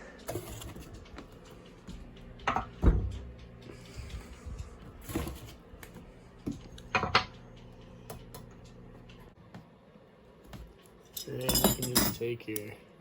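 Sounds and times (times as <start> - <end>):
metal clinks and knocks: 0.3 - 3.4, 11.1 - 12.4.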